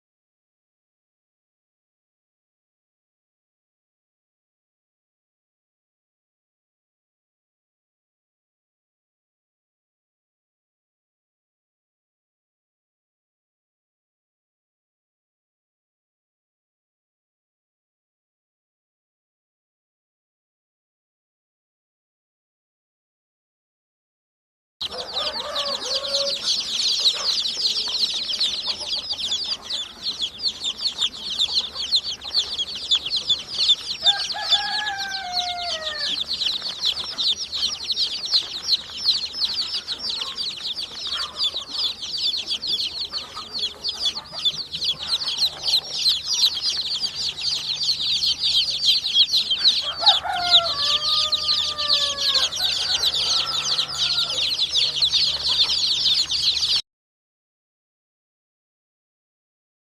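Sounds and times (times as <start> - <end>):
chicks high-pitched chirping: 24.8 - 56.8.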